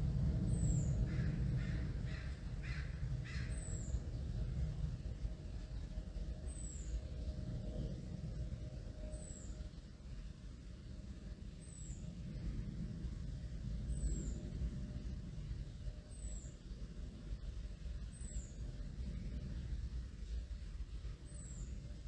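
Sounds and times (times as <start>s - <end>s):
low steady rumble: 0.0s - 22.0s.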